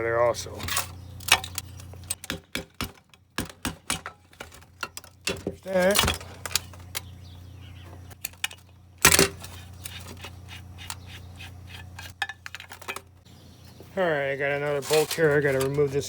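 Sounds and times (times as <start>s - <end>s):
steady low hum: 0.0s - 16.0s
metal tools clinking: 0.4s - 2.3s, 14.7s - 16.0s.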